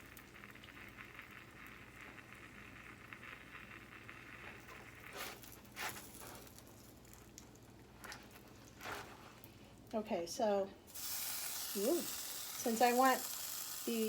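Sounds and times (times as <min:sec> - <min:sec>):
food sizzling in a pan: 0:10.9 - 0:14.0.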